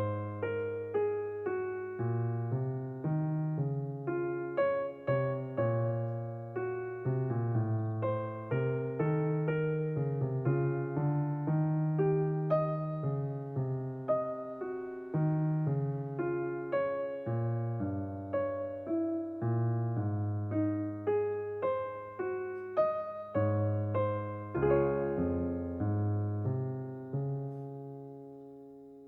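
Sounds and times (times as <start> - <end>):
slow electric piano music: 0.0 - 29.0.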